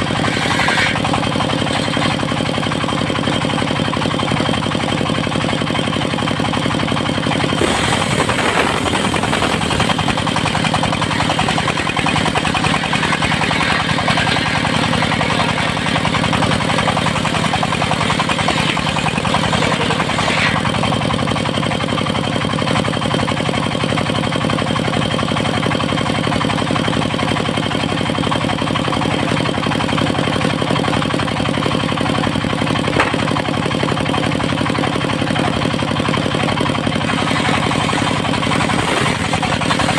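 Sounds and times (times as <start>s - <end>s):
saw blade cutting wood: 0.0s - 2.4s, 7.5s - 21.0s, 32.9s - 33.5s, 37.0s - 39.9s
sawmill engine running: 0.0s - 39.9s.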